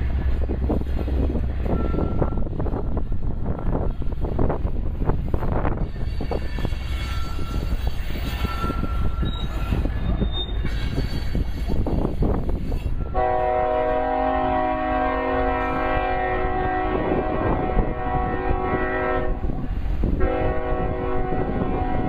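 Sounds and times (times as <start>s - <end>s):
wind buffeting microphone: 0.0s - 22.0s
locomotive air horn: 13.0s - 19.6s, 20.2s - 22.0s.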